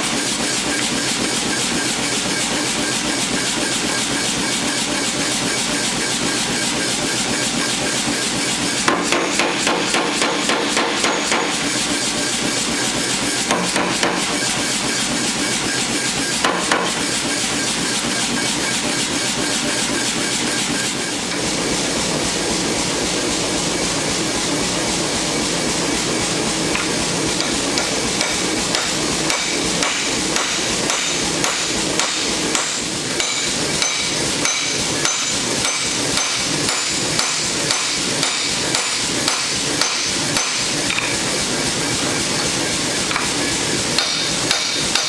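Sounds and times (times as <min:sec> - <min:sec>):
hammer striking hot steel: 0:08.8 - 0:12.1, 0:13.4 - 0:14.5, 0:16.4 - 0:17.2, 0:26.7 - 0:41.3, 0:43.1 - 0:45.0.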